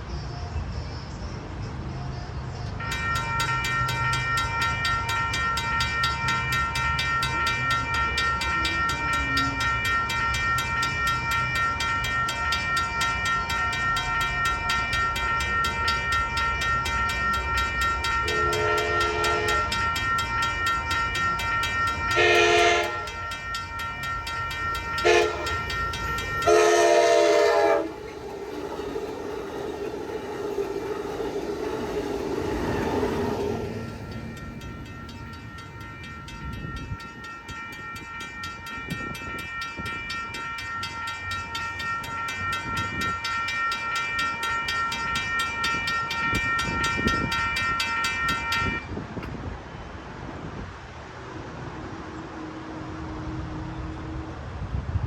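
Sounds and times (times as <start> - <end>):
train passing: 0.0 - 55.0
railroad crossing bell dinging: 0.3 - 55.0
train horn: 18.0 - 20.3, 21.3 - 23.7, 24.7 - 28.6, 41.8 - 49.0.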